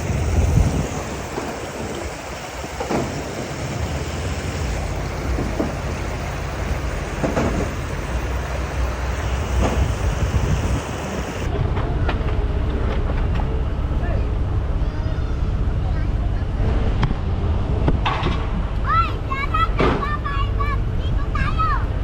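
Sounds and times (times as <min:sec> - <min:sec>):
constant hiss: 0:00.0 - 0:11.5
vehicle engine and road rumble: 0:00.0 - 0:22.0.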